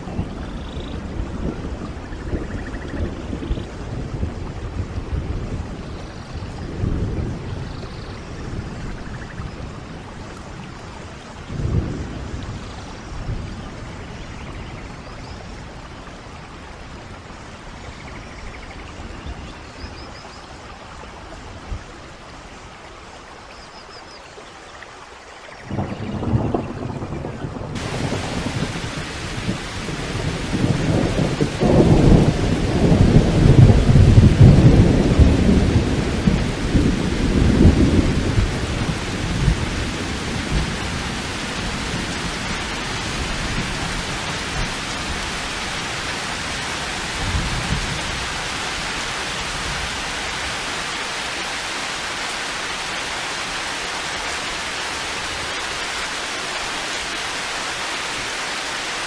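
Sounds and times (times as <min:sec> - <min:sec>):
heavy rain: 0:00.0 - 0:17.8, 0:27.2 - 0:59.0
thunder rumbling: 0:27.8 - 0:57.2.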